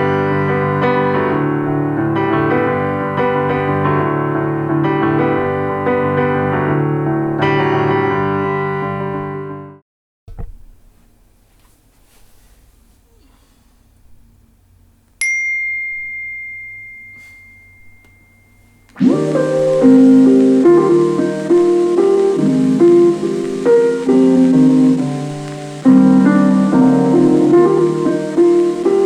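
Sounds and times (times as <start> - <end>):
piano music through speaker: 0.0 - 9.8, 19.0 - 29.0
high ding: 15.2 - 19.0.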